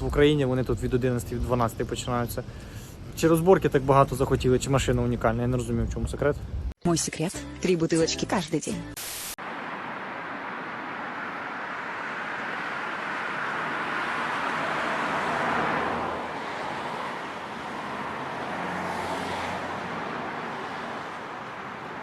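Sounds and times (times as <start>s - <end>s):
road traffic passing: 9.3s - 22.0s.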